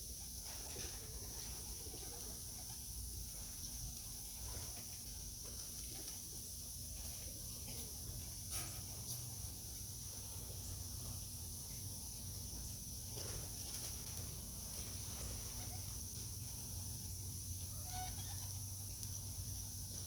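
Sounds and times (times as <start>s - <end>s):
steady low hum: 0.0s - 20.0s
faint animal calls: 15.3s - 16.0s, 17.6s - 18.8s.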